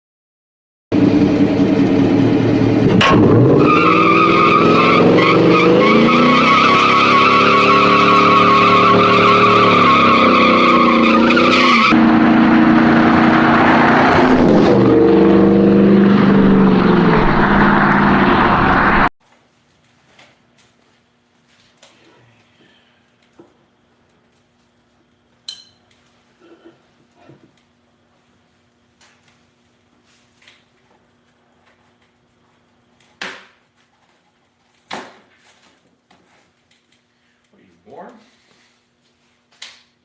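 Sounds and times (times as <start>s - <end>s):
car engine revving hard: 1.0s - 19.1s
tires squealing: 2.8s - 19.1s.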